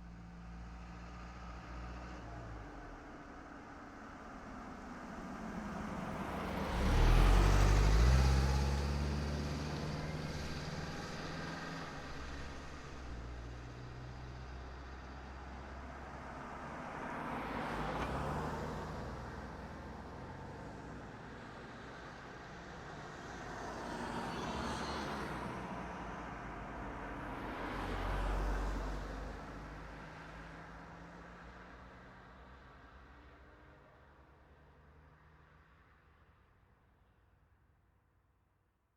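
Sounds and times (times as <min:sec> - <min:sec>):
cars driving past: 0:05.2 - 0:31.0.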